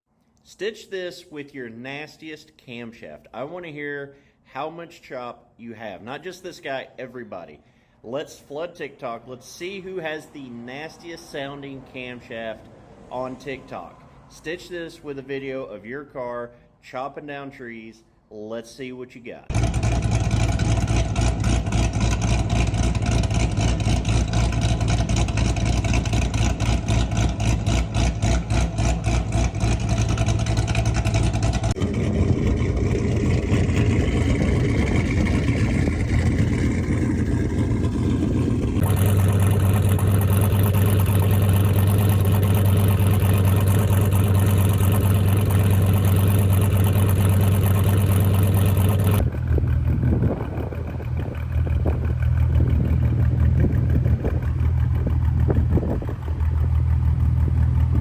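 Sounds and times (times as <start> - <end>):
car engine choppy idle: 19.5 - 58.0.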